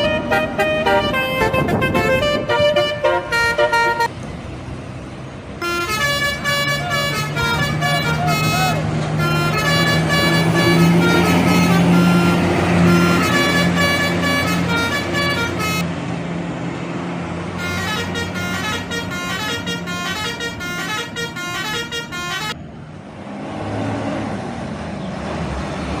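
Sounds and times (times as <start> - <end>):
melodic bus horn: 0.0 - 4.2, 5.6 - 15.9, 17.5 - 22.6
bus engine: 0.0 - 26.0
road noise: 0.0 - 26.0.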